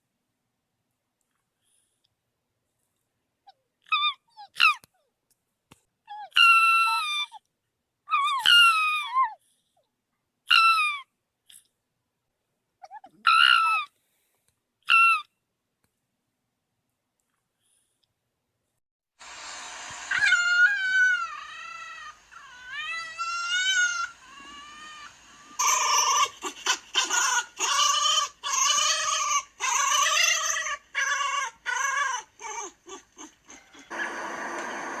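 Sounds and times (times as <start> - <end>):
fox yelping: 3.8 - 4.9, 6.1 - 7.4, 8.1 - 9.4, 10.5 - 11.1, 12.8 - 13.9, 14.8 - 15.3, 20.1 - 35.0
fox whining calls: 10.5 - 11.1, 12.8 - 13.9, 20.0 - 35.0.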